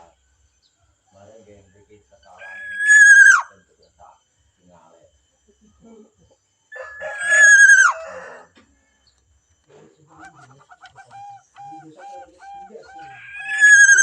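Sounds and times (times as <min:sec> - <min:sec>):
rooster crowing: 0:06.7 - 0:08.6, 0:12.2 - 0:14.0
chicken clucking: 0:10.0 - 0:14.0.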